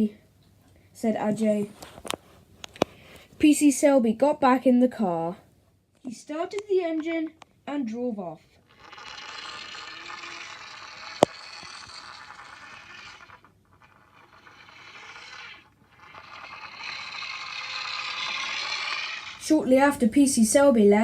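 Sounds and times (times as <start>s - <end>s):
toy car wheels scraping: 8.6s - 19.6s.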